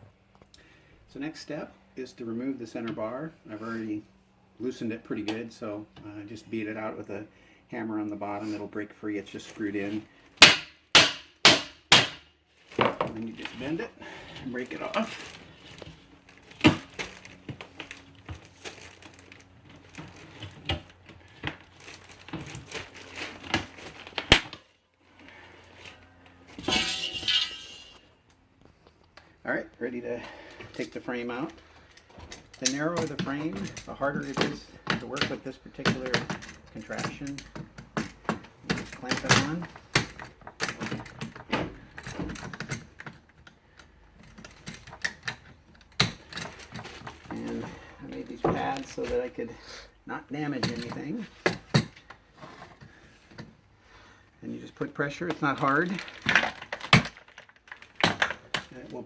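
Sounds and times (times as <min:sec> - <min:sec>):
harsh metal scrape: 0:26.6 - 0:28.0
metal cracking: 0:26.6 - 0:28.0
metal frame clicking and knocking: 0:26.6 - 0:28.0.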